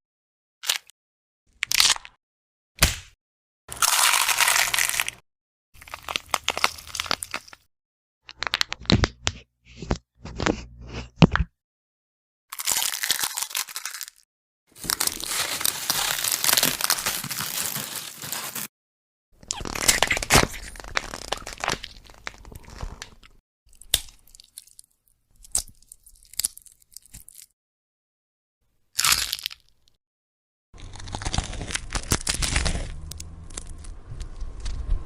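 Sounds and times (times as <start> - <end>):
bone cracks and snaps: 1.6 - 2.2, 2.8 - 5.2, 23.7 - 27.5, 29.0 - 30.0, 30.8 - 33.9
bone crunches: 1.6 - 2.2, 3.7 - 5.2, 5.8 - 7.7, 12.5 - 14.2, 19.4 - 27.5, 29.0 - 30.0, 30.8 - 33.9.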